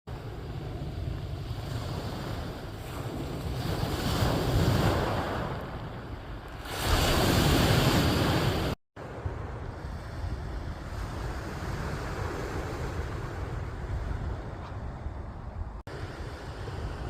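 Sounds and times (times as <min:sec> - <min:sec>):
sea waves breaking on shore: 0:00.1 - 0:14.6
wind buffeting microphone: 0:00.1 - 0:17.0.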